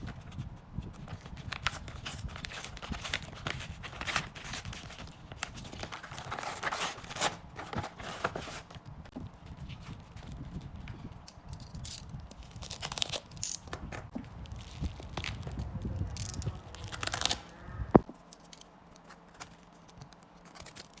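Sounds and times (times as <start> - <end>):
packaging rustling: 0.1 - 8.9, 14.5 - 17.4.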